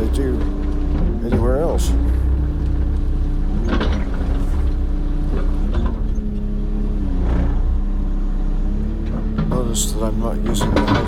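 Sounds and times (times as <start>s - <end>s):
short cracks or clunks: 0.0s - 8.1s, 8.8s - 11.0s
excavator engine running: 0.0s - 11.0s.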